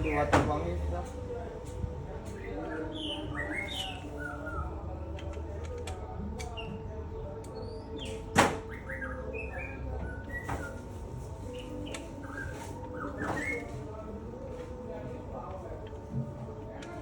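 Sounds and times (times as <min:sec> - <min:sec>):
small birds chirping: 0:02.3 - 0:05.8, 0:06.4 - 0:14.1.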